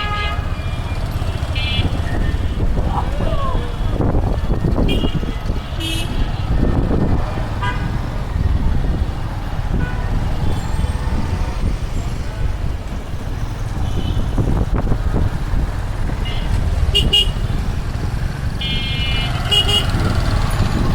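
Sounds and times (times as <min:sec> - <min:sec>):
vehicle horn toots: 0:00.0 - 0:02.6, 0:04.8 - 0:06.2, 0:07.6 - 0:08.0, 0:16.2 - 0:17.5, 0:18.6 - 0:20.1
city road traffic rumble: 0:00.0 - 0:20.9.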